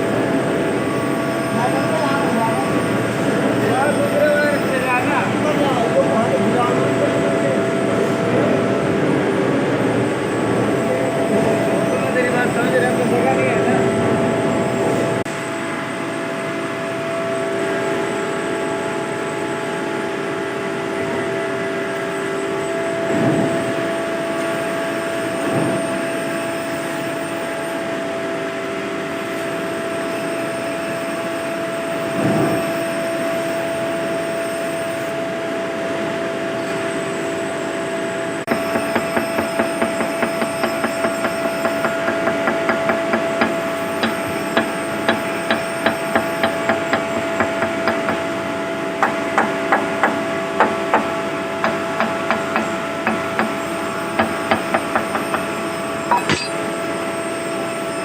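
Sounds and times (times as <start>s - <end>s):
industrial machinery hum: 0.0s - 58.0s
sharp hammering blows: 38.5s - 48.2s, 51.7s - 56.7s.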